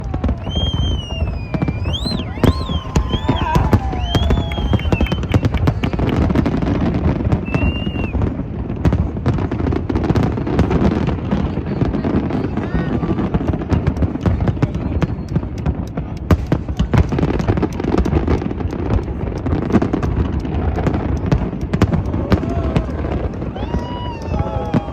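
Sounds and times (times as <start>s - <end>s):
high firework whistles: 0.0s - 6.4s, 7.3s - 8.2s
fireworks bangs and crackles: 0.0s - 24.9s.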